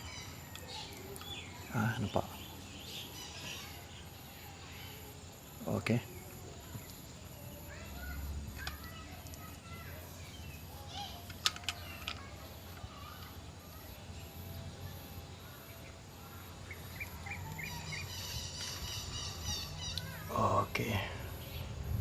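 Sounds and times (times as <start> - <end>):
birds chirping: 0.0 - 22.0
faint high insect call: 0.0 - 22.0
sharp clicks: 11.2 - 13.4
bird rapid trill: 13.0 - 20.4.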